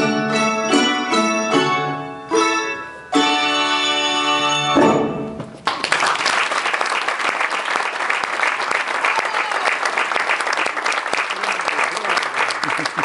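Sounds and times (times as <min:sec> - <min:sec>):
audience applause: 0:05.6 - 0:13.0.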